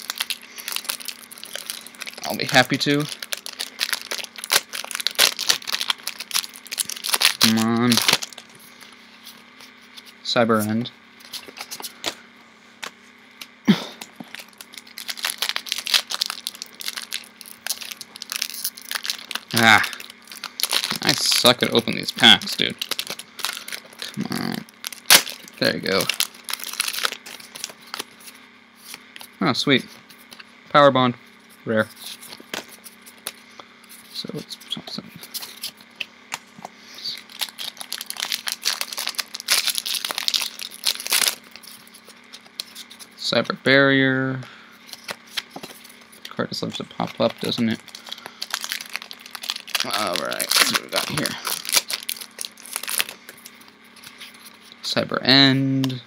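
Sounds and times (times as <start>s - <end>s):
foil wrapper crinkling and tearing: 0.0s - 9.4s, 13.9s - 29.3s, 37.0s - 43.1s, 44.9s - 54.6s.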